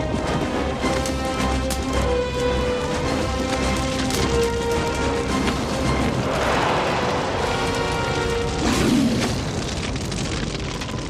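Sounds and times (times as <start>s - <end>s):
orchestral film music: 0.0s - 9.7s
deep rumbling booms: 6.0s - 10.8s.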